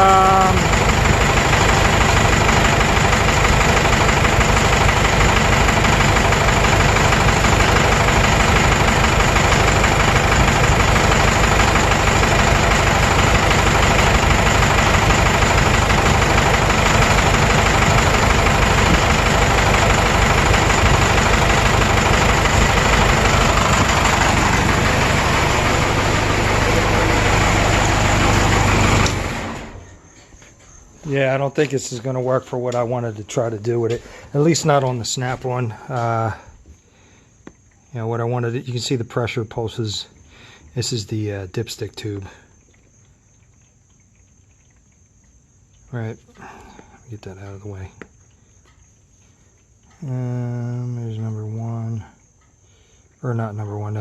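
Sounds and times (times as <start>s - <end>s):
diesel engine rumbling: 0.0s - 30.1s.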